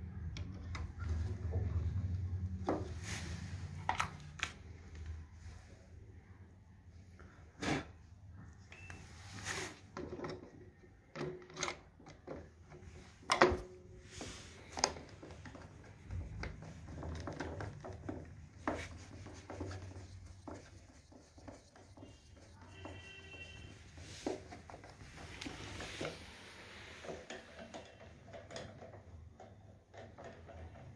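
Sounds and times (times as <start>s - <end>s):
small parts clicking and knocking: 26.9s - 30.9s.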